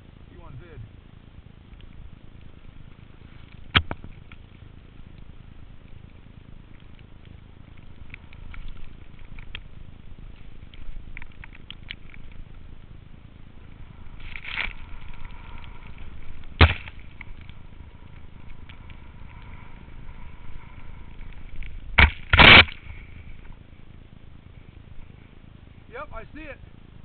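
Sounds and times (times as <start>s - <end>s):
steady rushing noise: 0.0s - 27.0s
skis sliding on snow: 13.4s - 23.4s.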